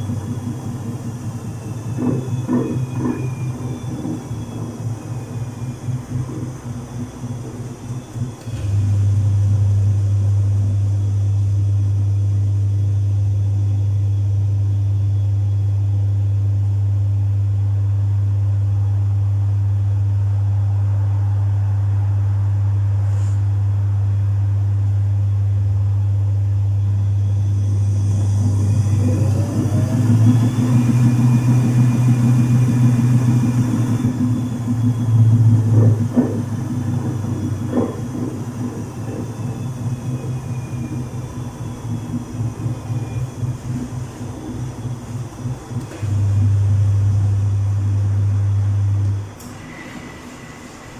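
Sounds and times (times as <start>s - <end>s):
washing machine motor hum: 0.0s - 50.9s.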